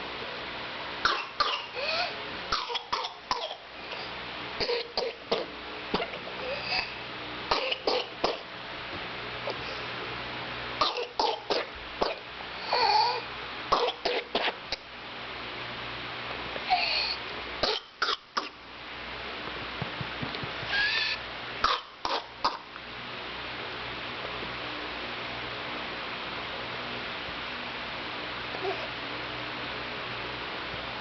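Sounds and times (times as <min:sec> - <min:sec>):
infant coughing: 0:01.1 - 0:03.7, 0:04.6 - 0:08.5, 0:10.8 - 0:14.6, 0:16.7 - 0:18.6, 0:21.6 - 0:22.7.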